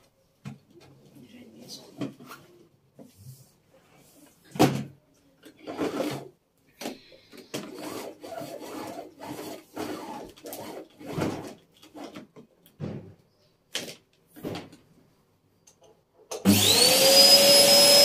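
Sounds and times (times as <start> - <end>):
rubbing and scraping: 5.5 - 6.4, 7.4 - 12.3.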